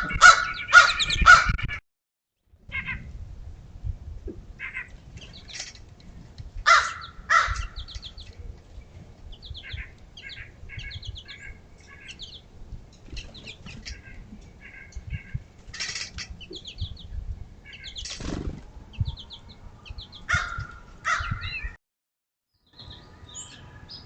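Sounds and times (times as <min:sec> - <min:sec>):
harsh bird calls: 0:00.0 - 0:01.8, 0:04.6 - 0:05.7, 0:06.7 - 0:08.4, 0:09.3 - 0:12.5, 0:13.2 - 0:21.8.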